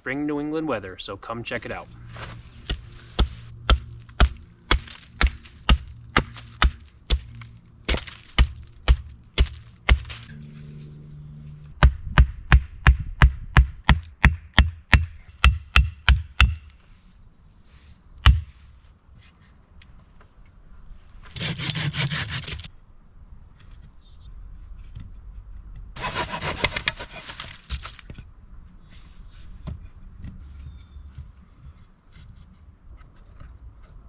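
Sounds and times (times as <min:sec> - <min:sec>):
chopping wood: 0:02.7 - 0:10.3
hand saw rasping through wood: 0:21.3 - 0:22.7, 0:26.0 - 0:27.9.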